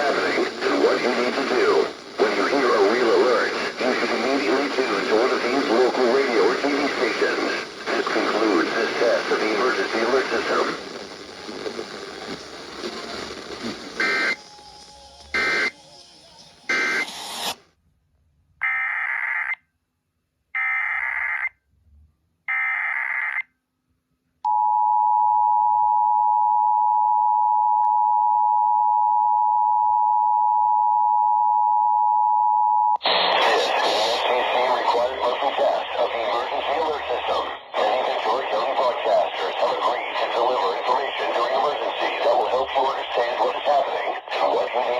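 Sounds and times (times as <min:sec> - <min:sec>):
background program audio: 0:00.0 - 0:17.6, 0:24.4 - 0:44.9
data bursts: 0:14.0 - 0:14.4, 0:15.4 - 0:15.8, 0:16.7 - 0:17.2, 0:18.6 - 0:19.6
warbling data header bursts: 0:14.0 - 0:14.4, 0:15.4 - 0:15.7, 0:18.6 - 0:19.6.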